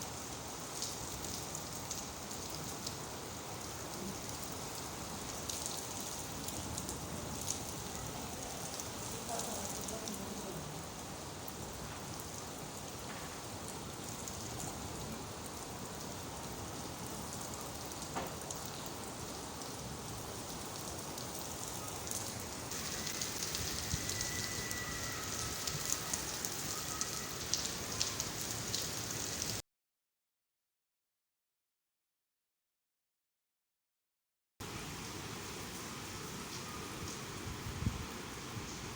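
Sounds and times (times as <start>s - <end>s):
steady rain falling: 0.0s - 29.6s, 34.6s - 38.9s.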